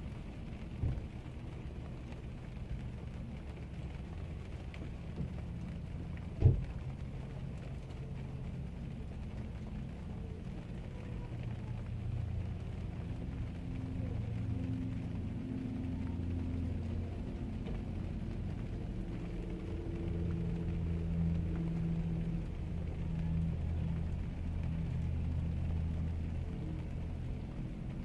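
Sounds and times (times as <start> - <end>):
rain falling: 0.0 - 28.0
vehicle engine rumbling: 0.0 - 28.0.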